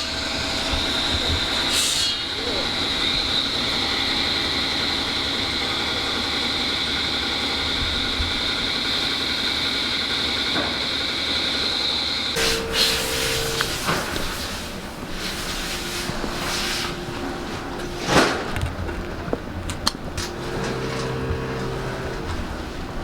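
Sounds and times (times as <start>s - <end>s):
metalworking machinery whine: 0.0s - 23.0s
low hum: 12.4s - 23.0s.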